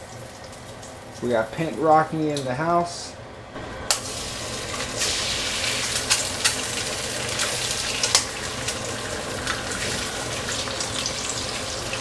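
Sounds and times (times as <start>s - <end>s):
food sizzling in grease: 3.9s - 12.0s
grease popping and crackling: 3.9s - 12.0s.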